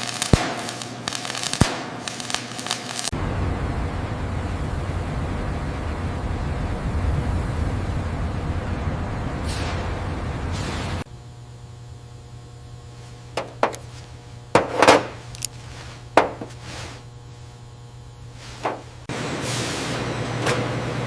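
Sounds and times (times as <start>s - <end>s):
low steady hum: 3.1s - 19.2s
loud rushing noise: 3.2s - 11.1s
sharp knocks and clicks: 13.4s - 13.8s, 16.2s - 16.5s.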